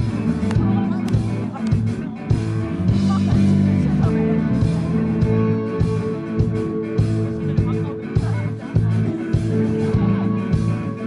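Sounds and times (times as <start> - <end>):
electric bass: 0.0 - 11.0
electric guitar: 0.0 - 11.0
steady drum beat: 0.0 - 11.0.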